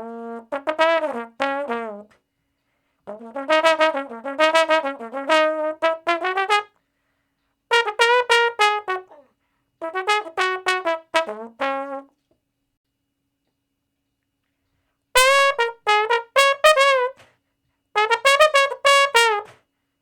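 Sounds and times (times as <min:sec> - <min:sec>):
brass instrument short notes: 0:03.1 - 0:06.7, 0:07.7 - 0:09.2, 0:09.8 - 0:12.2, 0:15.2 - 0:17.3, 0:18.0 - 0:19.6.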